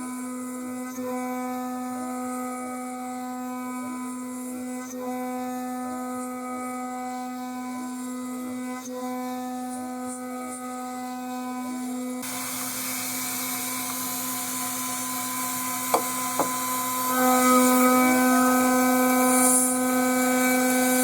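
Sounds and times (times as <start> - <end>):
cutter cutting material: 11.9 - 21.0
drive motors sweeping pitch: 12.2 - 20.9
milling machine spindle whine: 12.2 - 21.0.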